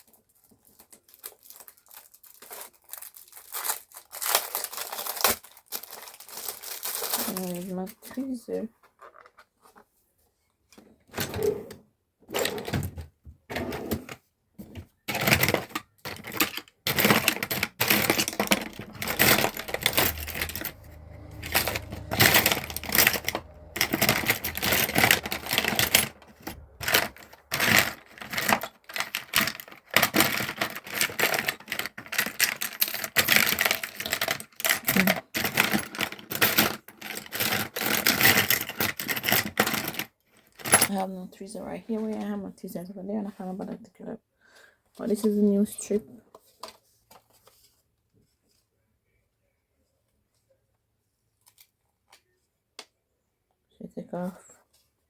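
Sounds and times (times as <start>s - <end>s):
makeup items clicking and clattering: 14.0s - 41.0s.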